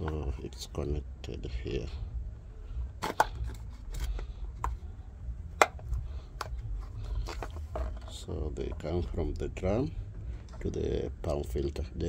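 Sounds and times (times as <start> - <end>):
low background rumble: 0.0 - 12.0
plastic parts clicking and knocking: 3.0 - 4.8, 5.6 - 9.0.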